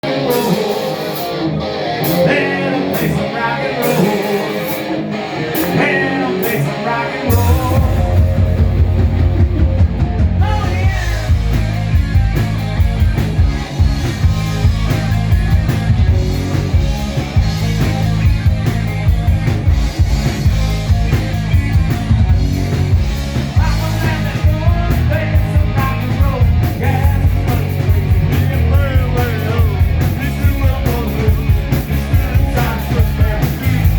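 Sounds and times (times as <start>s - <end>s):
person singing: 0.0s - 1.4s, 2.0s - 4.9s, 5.5s - 8.6s, 10.4s - 11.5s, 23.6s - 33.9s
bass and drums: 0.0s - 33.9s
rock guitar: 0.0s - 33.9s.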